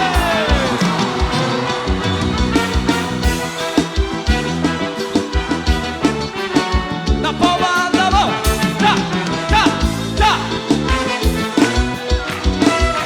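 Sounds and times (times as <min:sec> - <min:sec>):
upbeat instrumental band music: 0:00.0 - 0:13.0.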